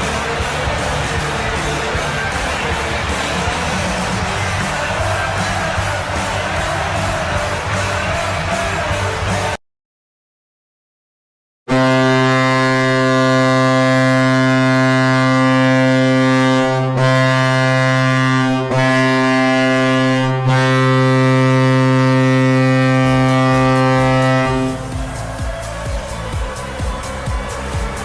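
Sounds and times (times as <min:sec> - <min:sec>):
deep air horn blast: 0:00.0 - 0:09.6, 0:11.7 - 0:28.0.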